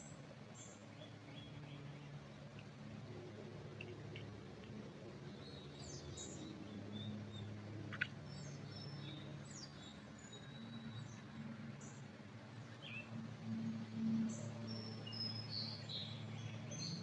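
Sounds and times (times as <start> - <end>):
small birds chirping: 3.8 - 13.2, 14.3 - 17.0.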